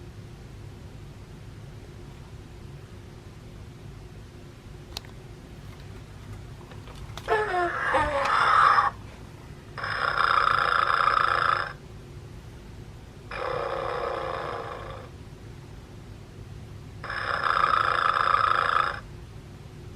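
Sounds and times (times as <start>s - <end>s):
toy bear snoring: 7.3s - 9.0s, 9.8s - 11.8s, 13.3s - 15.1s, 17.0s - 19.1s.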